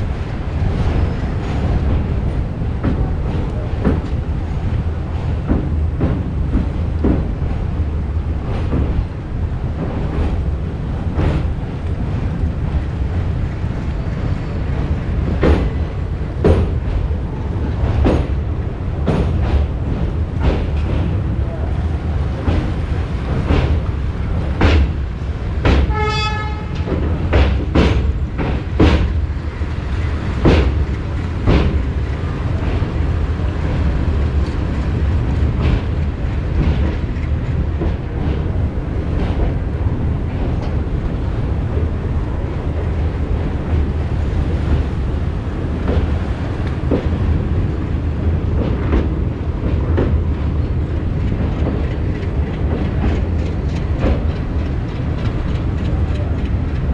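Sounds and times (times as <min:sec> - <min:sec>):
train rumbling: 0:00.0 - 0:56.9
wheels clacking over rail joints: 0:00.0 - 0:56.9
train horn blast: 0:25.8 - 0:26.9.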